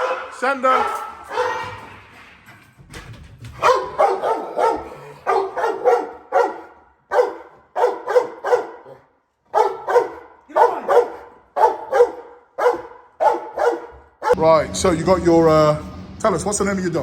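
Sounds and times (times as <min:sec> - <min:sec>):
dog barking: 0:00.0 - 0:01.8, 0:03.6 - 0:14.4.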